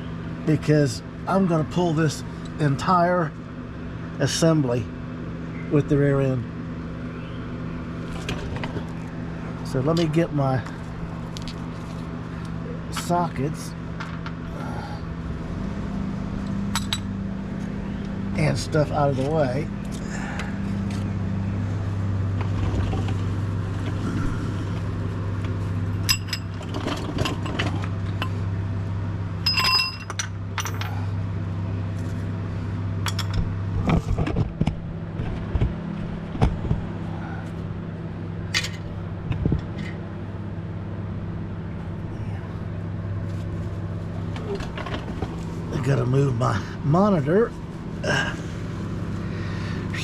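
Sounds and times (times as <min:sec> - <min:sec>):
low hum: 0:04.8 - 0:50.0
metal tools clinking: 0:26.0 - 0:27.8, 0:29.4 - 0:31.1.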